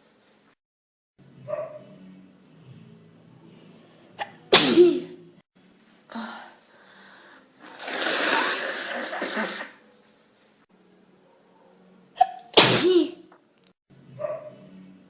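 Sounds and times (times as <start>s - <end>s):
person sneezing: 4.2s - 5.2s, 7.7s - 9.8s, 12.2s - 13.3s.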